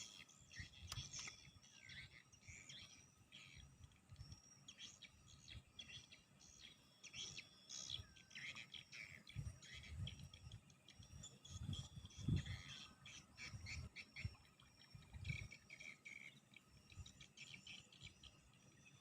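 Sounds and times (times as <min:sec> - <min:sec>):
birds chirping: 0:00.0 - 0:19.0.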